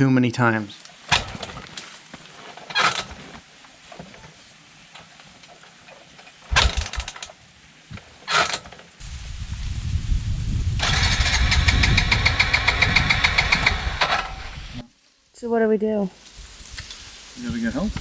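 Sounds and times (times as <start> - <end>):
motorbike engine cranking: 6.5 - 7.3, 8.3 - 8.8, 10.8 - 14.5
engine rumble: 9.1 - 14.8.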